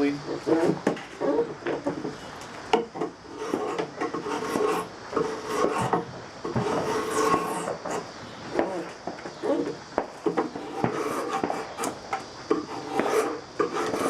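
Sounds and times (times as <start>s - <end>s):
drawknife shaving wood: 3.2s - 14.0s.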